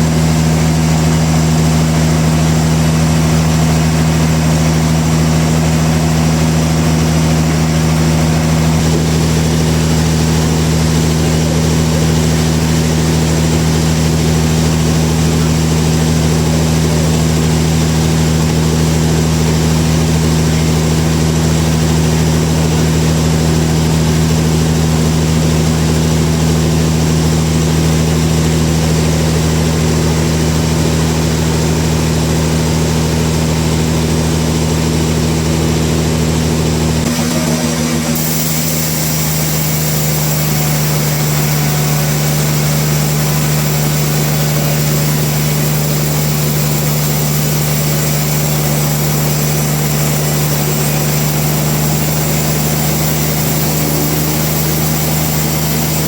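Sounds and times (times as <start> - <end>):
sawmill machinery humming: 0.0 - 26.6, 36.9 - 56.0.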